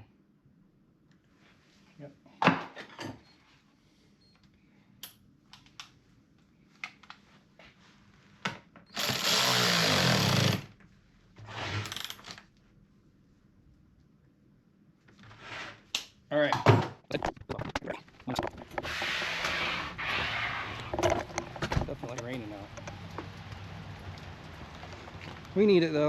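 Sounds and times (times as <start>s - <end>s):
electric chainsaw whining: 9.0s - 10.7s
handling clicks and knocks: 20.8s - 25.6s.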